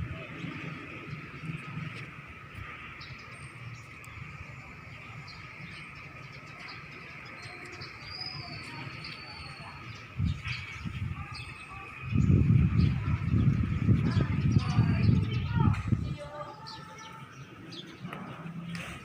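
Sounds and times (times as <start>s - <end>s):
birds chirping and calling: 0.0s - 19.0s
low rumble: 10.0s - 16.6s.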